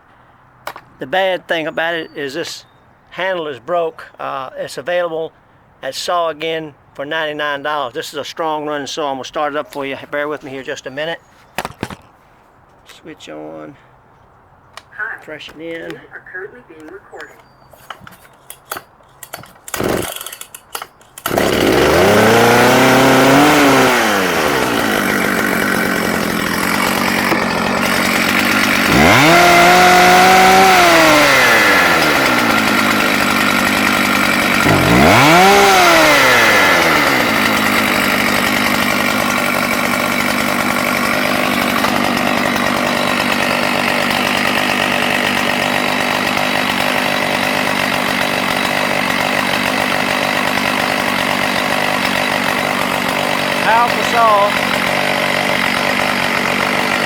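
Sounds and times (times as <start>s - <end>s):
chainsaw starting and revving: 18.7s - 57.0s.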